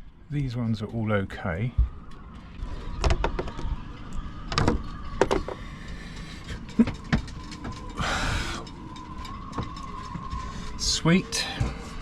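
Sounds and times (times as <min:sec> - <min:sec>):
handling knocks and clicks: 0:06.6 - 0:08.0.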